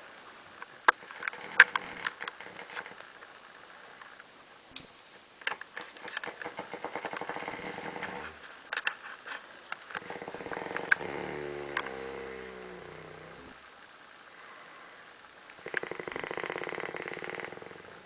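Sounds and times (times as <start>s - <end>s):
man snoring: 7.2s - 8.4s, 10.0s - 13.6s, 15.6s - 18.0s.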